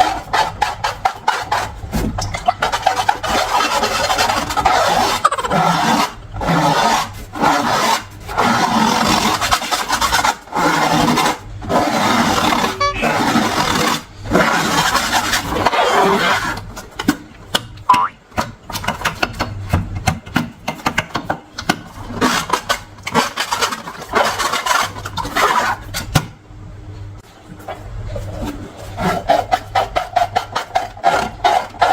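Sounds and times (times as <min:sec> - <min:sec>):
rubber balloons rubbed by hand: 0:00.0 - 0:16.5.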